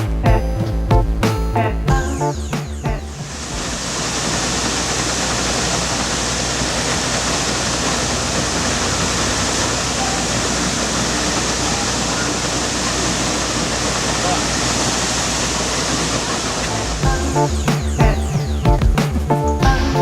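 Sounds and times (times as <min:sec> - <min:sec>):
water gushing from hydrant: 0:03.1 - 0:17.6.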